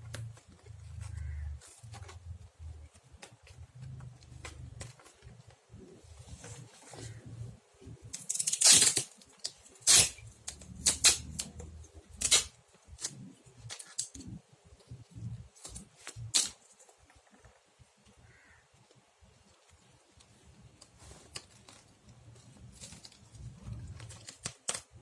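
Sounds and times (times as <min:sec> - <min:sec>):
sticky tape ripping and crinkling: 0:08.0 - 0:14.4, 0:15.2 - 0:16.8, 0:21.0 - 0:25.0.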